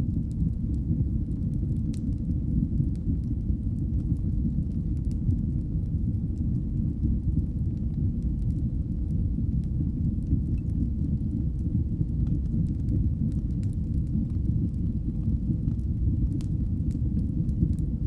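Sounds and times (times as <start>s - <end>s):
faint fire crackles: 0.0s - 18.0s
low rumble of flames: 0.0s - 18.0s.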